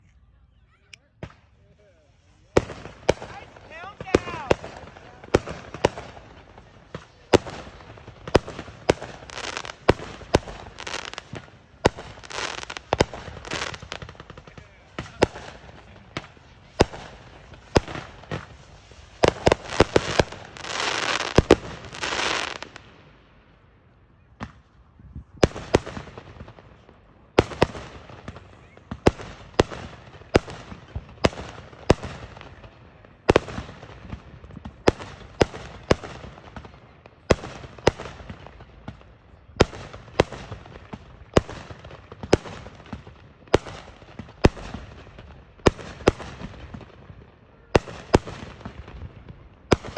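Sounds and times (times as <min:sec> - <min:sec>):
fireworks hissing crackle: 0:01.2 - 0:22.9
fireworks bangs: 0:01.2 - 0:23.1, 0:24.3 - 0:49.9.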